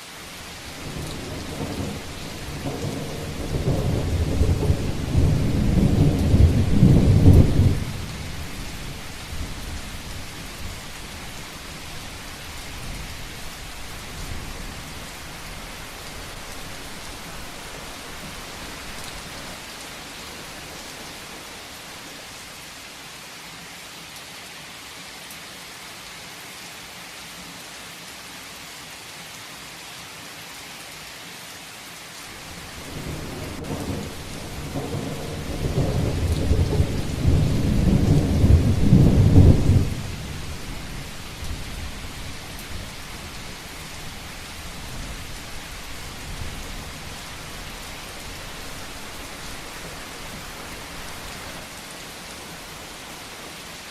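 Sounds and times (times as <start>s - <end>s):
heavy rain falling: 0.0s - 28.1s, 28.7s - 53.9s
thunder rumbling: 0.7s - 11.9s, 32.4s - 51.5s.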